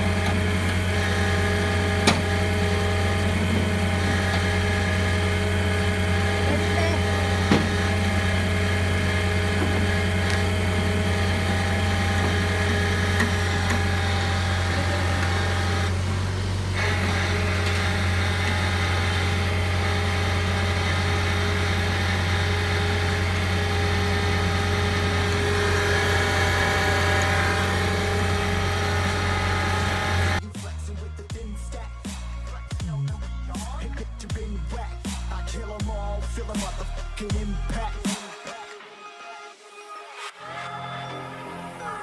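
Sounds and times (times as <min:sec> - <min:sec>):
car engine idling: 0:00.0 - 0:30.4.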